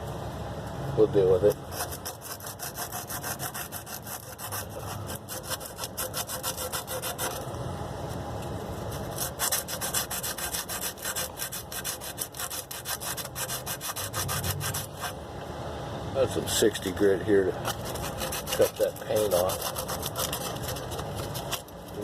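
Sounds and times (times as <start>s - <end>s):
sandpaper rubbing on metal pipe: 1.5s - 7.4s, 8.8s - 15.2s, 17.6s - 22.0s.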